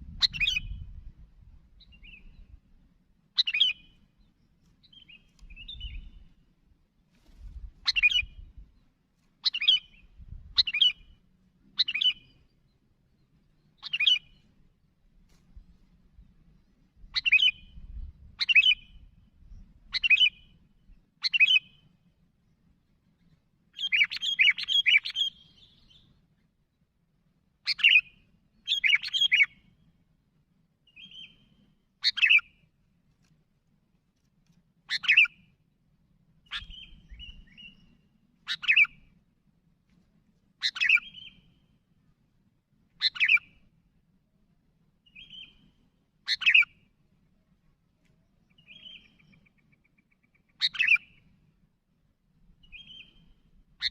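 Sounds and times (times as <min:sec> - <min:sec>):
bulbul calling: 0:00.1 - 0:00.8, 0:03.4 - 0:04.0, 0:07.8 - 0:08.5, 0:09.4 - 0:11.2, 0:11.8 - 0:12.4, 0:13.8 - 0:14.4, 0:17.1 - 0:19.0, 0:21.2 - 0:21.8, 0:23.8 - 0:26.0, 0:27.6 - 0:29.7, 0:32.0 - 0:32.5, 0:34.9 - 0:35.4, 0:36.4 - 0:39.1, 0:40.6 - 0:41.5, 0:43.0 - 0:43.6, 0:46.3 - 0:46.8, 0:48.5 - 0:51.2, 0:52.6 - 0:53.9.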